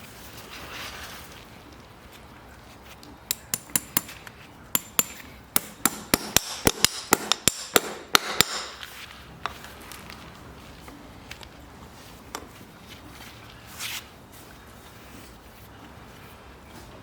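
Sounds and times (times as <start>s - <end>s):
hammer striking metal: 4.8s - 8.8s.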